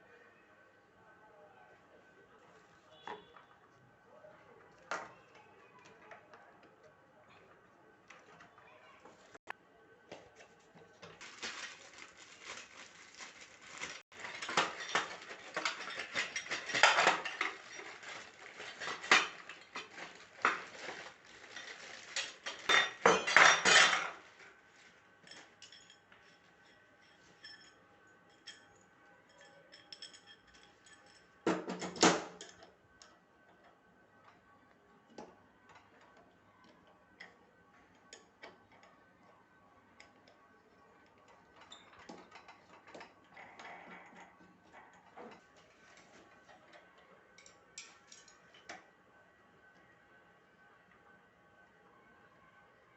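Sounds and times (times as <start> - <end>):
metal tools clinking and clattering: 11.2 - 24.5, 25.2 - 32.7, 41.5 - 48.8.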